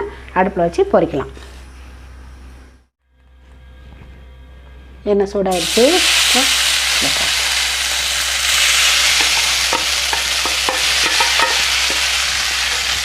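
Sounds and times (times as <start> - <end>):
fish frying in hot oil: 5.5 - 13.0.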